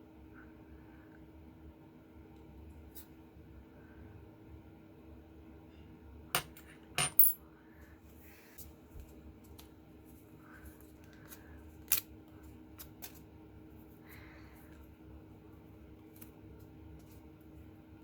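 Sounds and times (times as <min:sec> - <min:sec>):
faint steady hum: 0:00.0 - 0:18.0
small metal parts clinking: 0:06.4 - 0:07.4.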